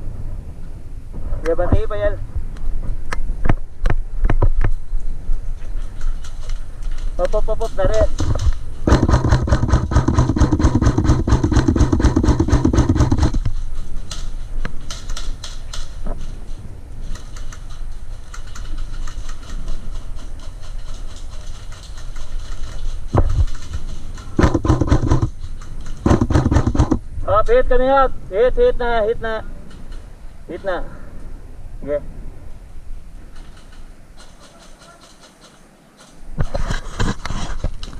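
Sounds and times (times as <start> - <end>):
airsoft gun full-auto bursts: 8.8 - 13.4, 24.4 - 27.0.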